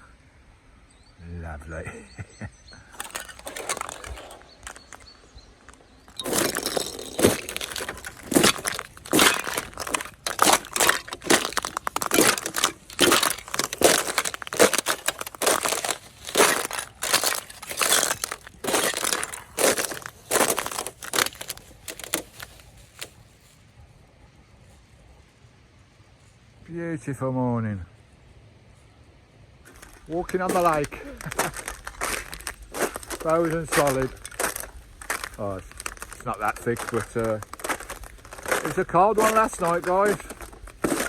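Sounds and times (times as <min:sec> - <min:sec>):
footsteps crunching on ice: 0:02.9 - 0:23.2, 0:29.7 - 0:41.0.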